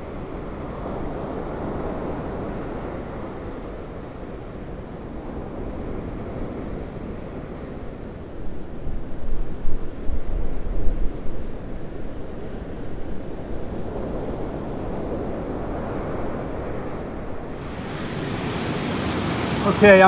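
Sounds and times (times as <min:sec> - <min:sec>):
strong wind: 0:00.0 - 0:20.0
storm surf breaking: 0:06.9 - 0:20.0.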